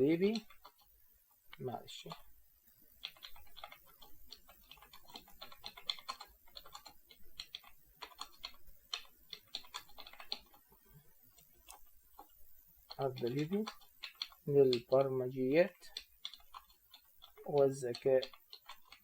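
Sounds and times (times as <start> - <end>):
keyboard typing clicks: 3.0 - 10.7, 11.4 - 15.1, 15.7 - 19.0.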